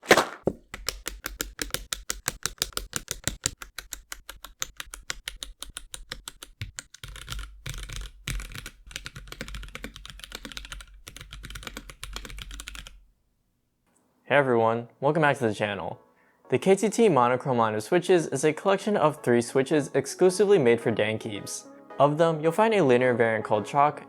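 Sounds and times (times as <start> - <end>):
mechanical keyboard typing: 0.6 - 13.0.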